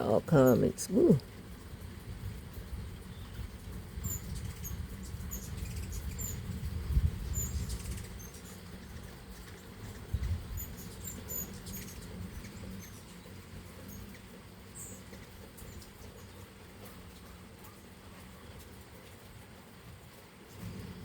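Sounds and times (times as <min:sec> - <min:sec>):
low background rumble: 0:00.0 - 0:21.0
hummingbird squeaky chips: 0:07.3 - 0:16.4.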